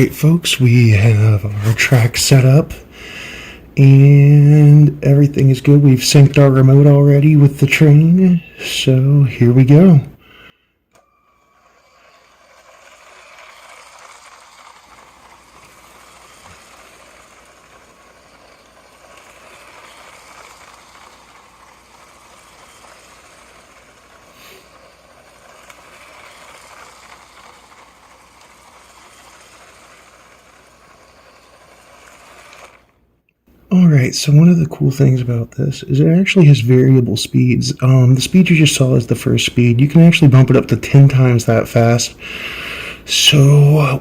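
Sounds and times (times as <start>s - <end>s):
electric motor whir: 10.9s - 33.1s
toy train wheels rattling on track: 11.0s - 33.0s, 37.5s - 42.1s.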